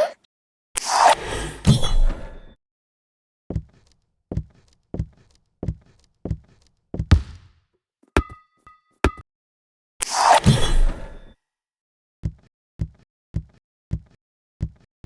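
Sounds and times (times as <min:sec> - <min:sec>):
dull knocks: 0:07.0 - 0:07.6
knock with ringing tail: 0:07.1 - 0:07.5, 0:08.2 - 0:09.2.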